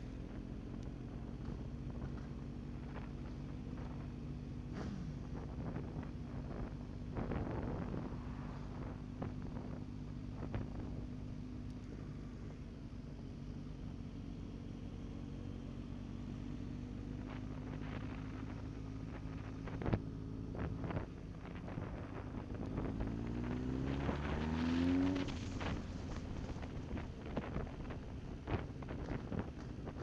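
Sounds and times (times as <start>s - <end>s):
motorcycle engines running: 0.0s - 30.0s
engine revving: 21.6s - 29.5s.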